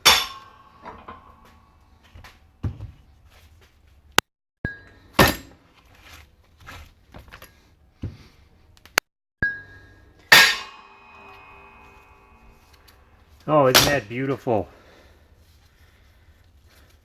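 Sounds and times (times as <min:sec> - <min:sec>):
sharp metal strikes: 0:00.0 - 0:02.0, 0:04.7 - 0:05.6, 0:09.4 - 0:14.3
metal tools clinking: 0:00.0 - 0:02.2, 0:09.5 - 0:14.6.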